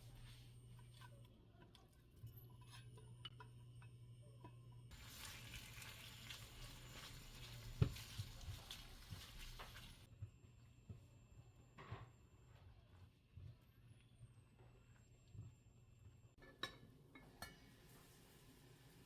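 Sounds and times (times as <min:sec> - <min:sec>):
steady cooking hiss: 0:04.9 - 0:10.1, 0:17.4 - 0:19.0.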